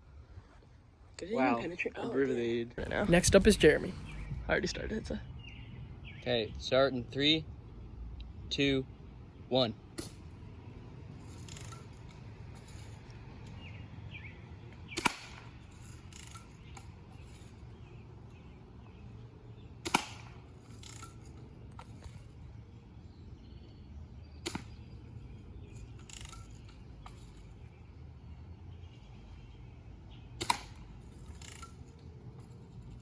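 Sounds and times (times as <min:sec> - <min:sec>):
bb gun shots: 0:14.9 - 0:15.6, 0:19.8 - 0:21.0, 0:24.4 - 0:24.9, 0:30.4 - 0:31.0.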